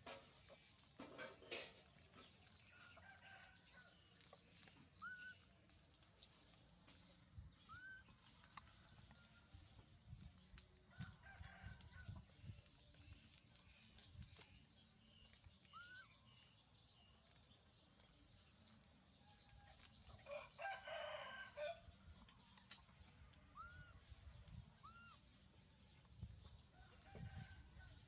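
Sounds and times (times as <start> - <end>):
faint rooster crowing: 2.7 - 4.0, 10.9 - 12.2, 19.2 - 22.0, 26.7 - 28.0.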